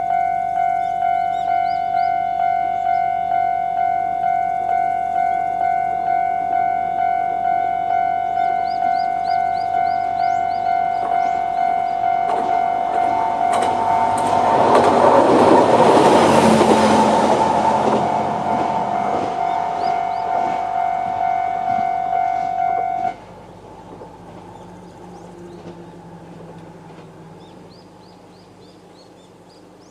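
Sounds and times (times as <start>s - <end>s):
level crossing bell clanging: 0.0s - 23.2s
diesel railcar engine: 0.0s - 29.9s
train wheels clicking: 8.6s - 23.2s, 23.8s - 28.4s.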